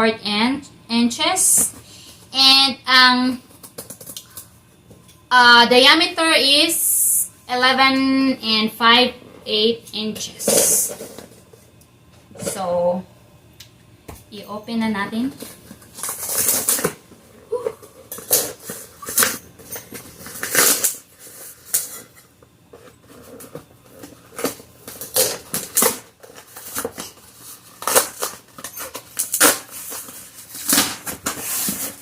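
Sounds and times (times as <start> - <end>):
cardboard tearing and rustling: 15.6 - 17.0, 18.2 - 22.1, 23.1 - 32.0.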